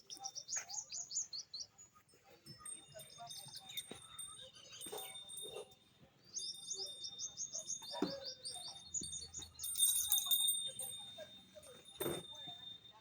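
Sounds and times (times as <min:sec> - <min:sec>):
small bird chirping: 0:00.0 - 0:10.4.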